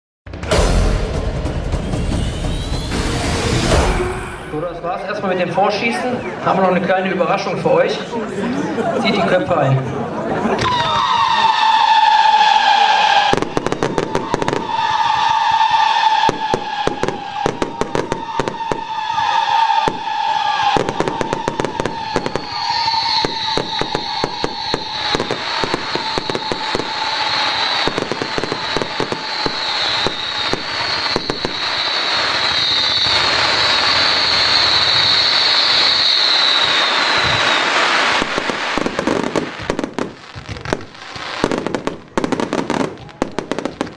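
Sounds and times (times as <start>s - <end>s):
fireworks whistling: 0.3s - 6.6s, 10.3s - 43.9s
fireworks bangs and crackling: 10.3s - 43.9s.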